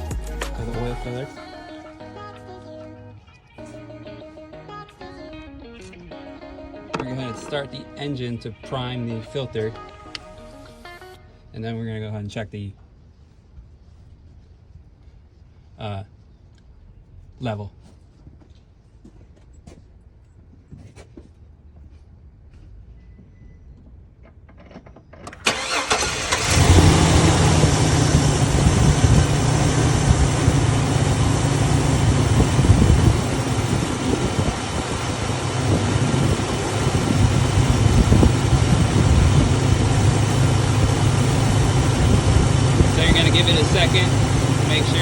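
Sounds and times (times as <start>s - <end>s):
car engine starting and idling: 0.0s - 3.1s, 3.7s - 12.2s, 24.2s - 45.0s.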